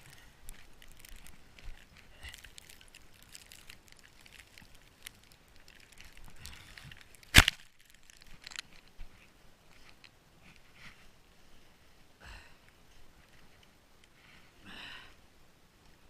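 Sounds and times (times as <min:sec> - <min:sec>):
faint crackling and crunching: 0:00.0 - 0:14.9
sharp loud crack: 0:07.3 - 0:07.6.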